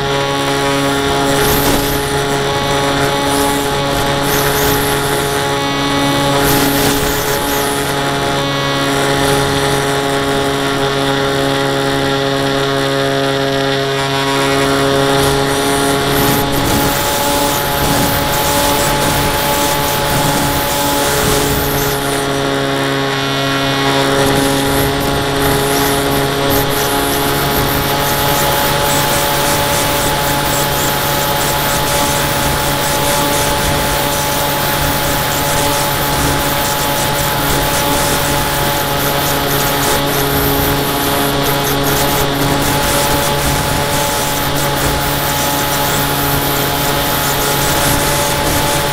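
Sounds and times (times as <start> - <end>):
electric motor and propeller whine: 0.0 - 48.9
wind rush: 13.2 - 22.8.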